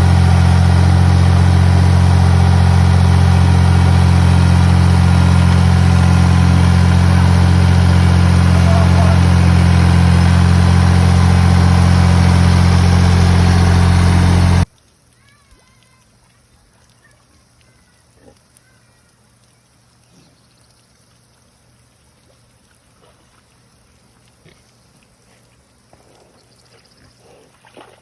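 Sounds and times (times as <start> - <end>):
engine idling: 0.0 - 14.7.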